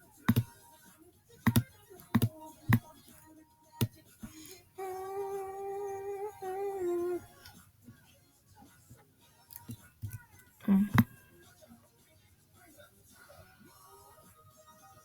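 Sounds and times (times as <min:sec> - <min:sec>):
computer mouse clicks: 0:00.3 - 0:00.5, 0:01.5 - 0:02.8.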